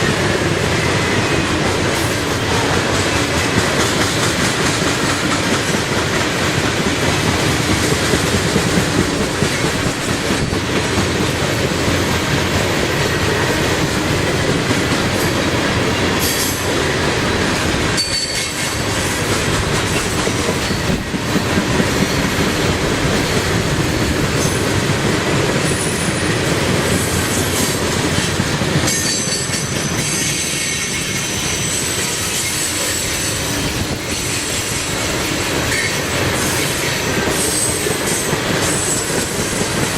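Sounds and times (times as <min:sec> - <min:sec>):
train wheels clattering on rails: 0:00.0 - 0:39.9
high wheel squeal: 0:29.0 - 0:35.1, 0:35.7 - 0:39.1.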